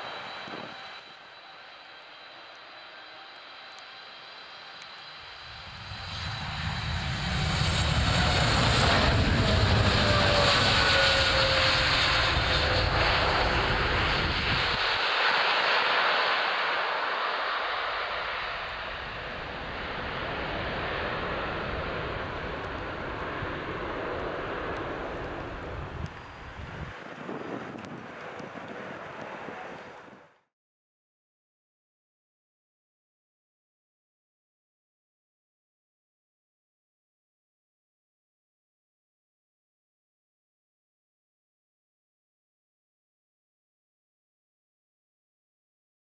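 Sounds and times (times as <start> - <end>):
jet whine falling in pitch: 0.0 - 28.5
jet engines roaring past: 0.0 - 30.4.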